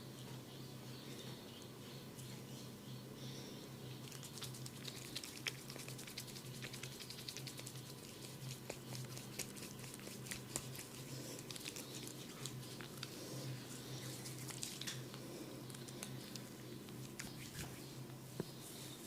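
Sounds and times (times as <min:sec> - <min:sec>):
wet clicks of scalp massage: 0:04.1 - 0:13.1.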